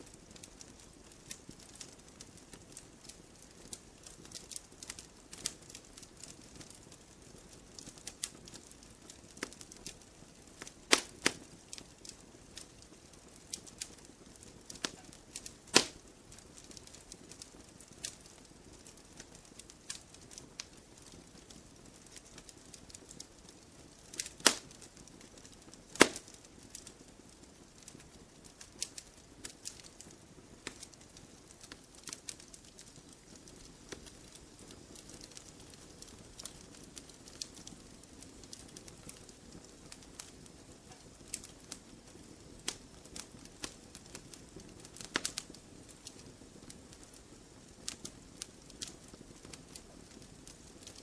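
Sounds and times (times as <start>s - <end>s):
campfire crackling and popping: 0.0s - 51.0s
low steady fire hiss: 0.0s - 51.0s
sharp loud snaps: 10.9s - 11.4s, 15.7s - 16.0s.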